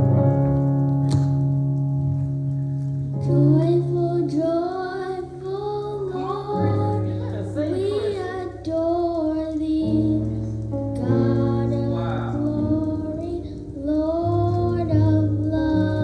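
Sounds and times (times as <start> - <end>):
steady bass notes: 0.0 - 16.0
person singing long notes: 3.3 - 16.0.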